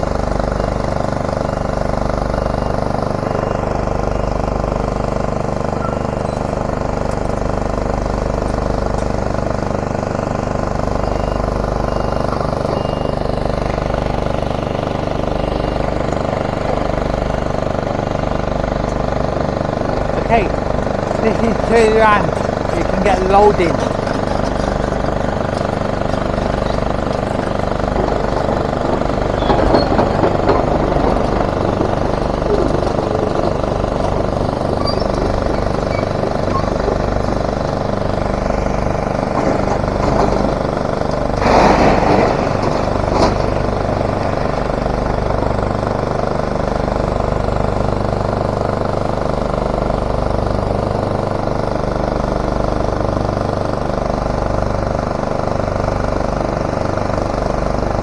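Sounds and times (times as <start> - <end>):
diesel machinery running: 0.0 - 58.0
loud clattering crash: 41.4 - 43.7.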